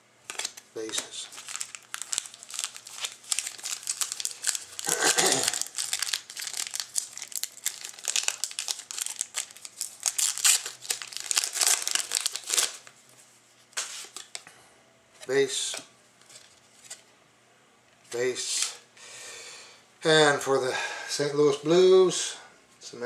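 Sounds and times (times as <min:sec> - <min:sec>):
plastic wrapper tearing and crinkling: 0:00.3 - 0:12.9, 0:13.7 - 0:14.4.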